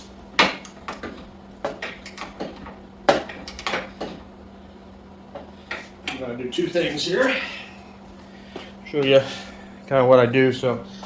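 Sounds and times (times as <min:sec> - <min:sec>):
metal tools clanking on metal: 0:06.0 - 0:07.4.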